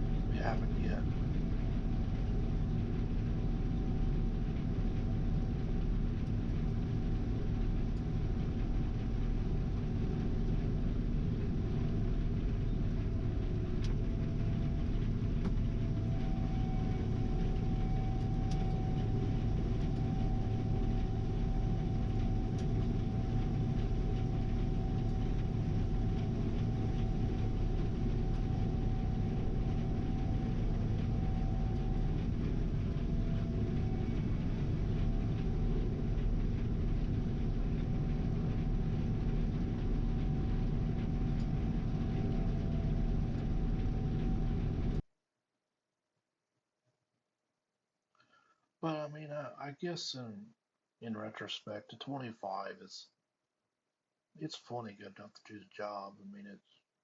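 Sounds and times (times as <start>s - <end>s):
combine harvester drone: 0.0s - 45.0s
steady machine whine: 0.0s - 45.0s.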